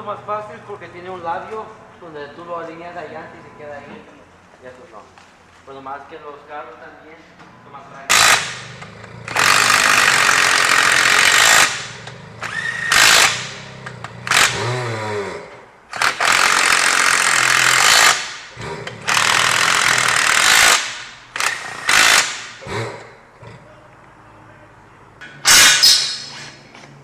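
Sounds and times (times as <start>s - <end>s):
pneumatic tool bursts: 8.1s - 15.2s, 15.9s - 22.8s, 25.4s - 26.6s.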